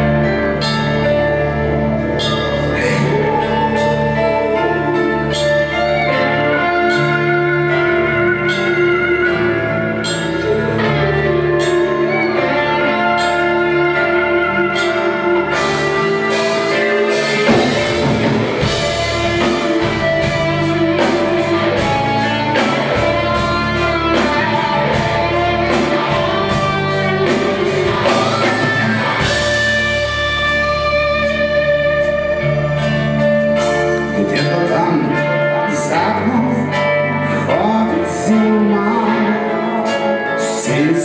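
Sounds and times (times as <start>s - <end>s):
guitar melody: 0.0s - 41.0s
steady drum beat: 15.6s - 34.2s.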